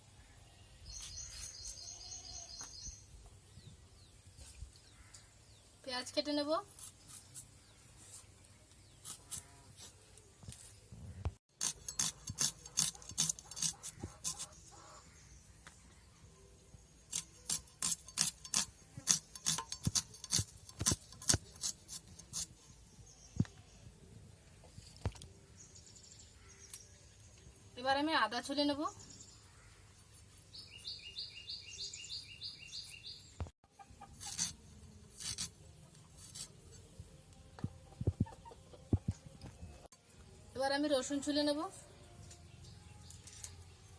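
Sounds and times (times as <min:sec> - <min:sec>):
bird chirping: 0:00.2 - 0:05.7, 0:28.8 - 0:34.1
knife cutting onion: 0:08.9 - 0:10.1, 0:11.5 - 0:14.6, 0:17.1 - 0:22.6, 0:34.1 - 0:36.8.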